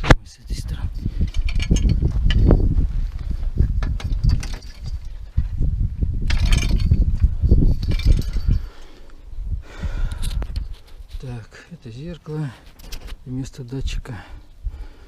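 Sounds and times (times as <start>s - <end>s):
metal parts knocking and clinking: 1.1s - 2.7s, 3.8s - 5.5s, 6.2s - 8.9s.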